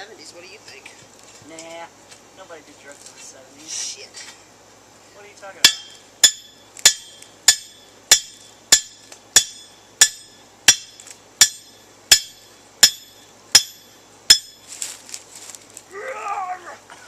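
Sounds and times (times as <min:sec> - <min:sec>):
hammer striking metal: 0:05.6 - 0:14.6.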